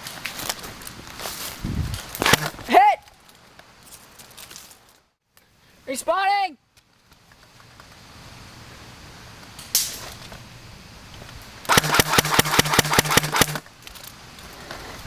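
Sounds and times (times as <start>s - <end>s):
airsoft gun firing: 2.2s - 2.6s, 11.7s - 13.6s
sharp snap: 2.2s - 2.6s, 11.7s - 13.6s.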